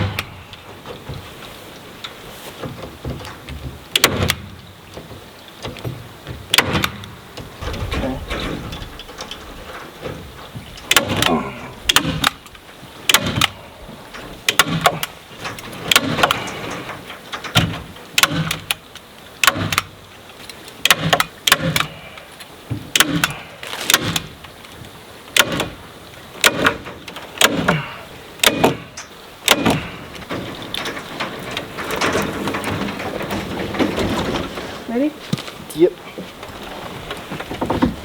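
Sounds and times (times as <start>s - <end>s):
staples driven into wood: 3.0s - 9.4s, 10.8s - 13.6s, 14.4s - 20.0s, 20.8s - 22.0s, 22.7s - 24.5s, 25.3s - 25.8s, 26.4s - 30.4s.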